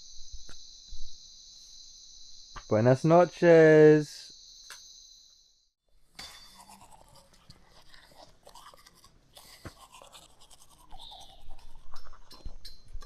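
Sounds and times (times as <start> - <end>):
irregular scratching and scraping: 6.2 - 13.0.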